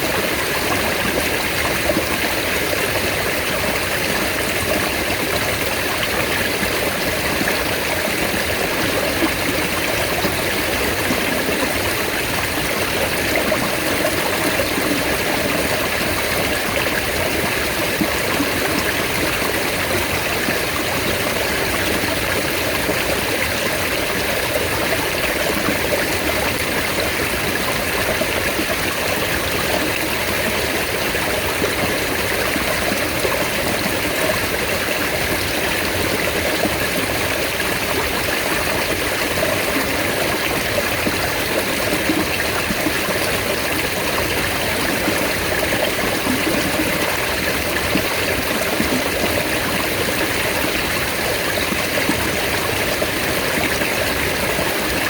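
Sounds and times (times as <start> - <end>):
mountain stream rushing: 0.0 - 55.0.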